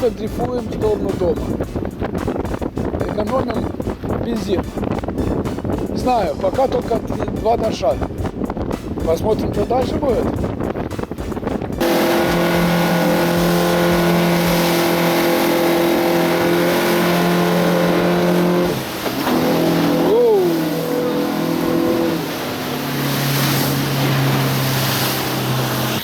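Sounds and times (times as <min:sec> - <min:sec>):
boat engine running: 0:00.0 - 0:26.0
wind noise: 0:00.0 - 0:26.0
rising and falling tone: 0:11.8 - 0:24.9.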